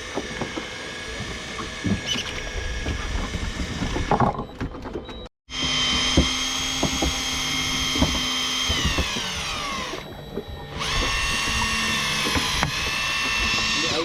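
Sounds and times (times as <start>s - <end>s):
electric fishing reel motor whining: 5.5s - 14.0s.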